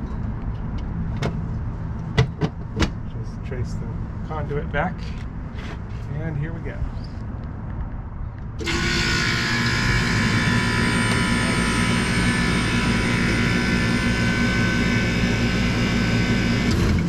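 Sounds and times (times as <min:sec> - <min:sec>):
low compressor hum: 0:01.0 - 0:17.0
whining tones: 0:08.6 - 0:17.0.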